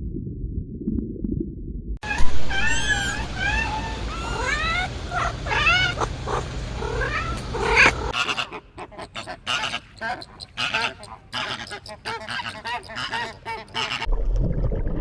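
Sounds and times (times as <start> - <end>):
animals giving high cries: 2.1 - 14.1.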